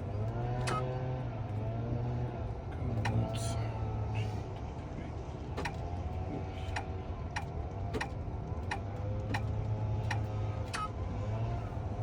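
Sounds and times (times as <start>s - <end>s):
turn signal ticking: 6.7s - 10.9s.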